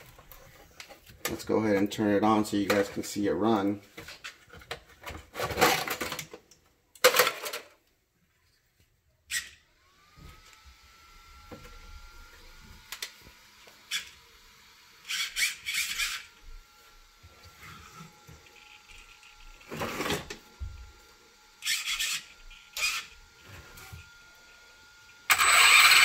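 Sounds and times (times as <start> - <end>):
electric motor whine: 9.8 - 26.0
toy truck handling clicks: 25.3 - 26.0.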